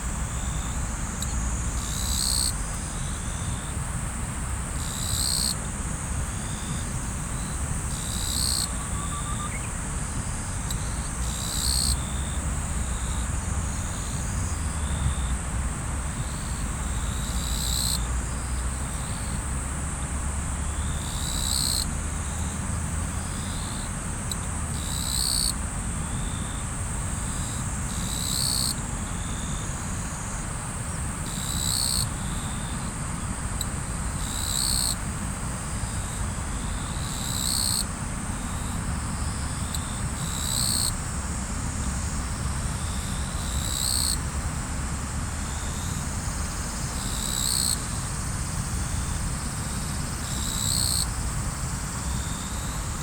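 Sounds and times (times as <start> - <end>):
insect trill: 0.0 - 15.4, 16.0 - 19.8, 20.4 - 53.0
high-pitched insect call: 0.1 - 15.4, 16.1 - 19.8, 20.6 - 44.7, 45.4 - 53.0.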